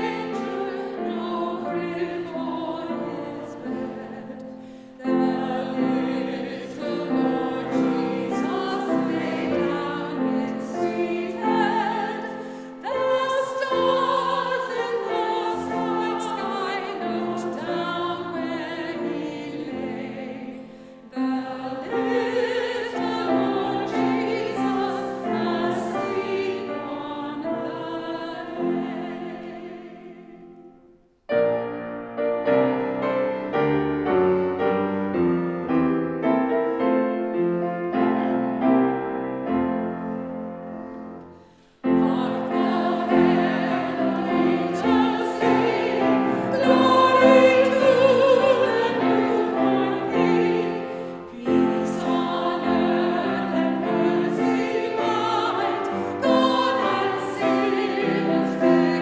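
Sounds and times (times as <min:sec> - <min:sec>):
choir singing a carol: 0:00.0 - 0:59.0
piano accompaniment: 0:00.0 - 0:59.0.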